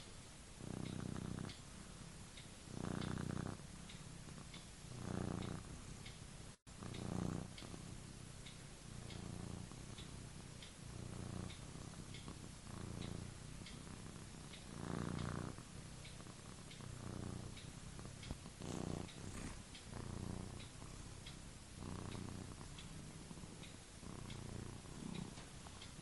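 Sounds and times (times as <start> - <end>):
cat snoring: 0.6 - 5.9, 6.7 - 8.2, 8.9 - 26.0.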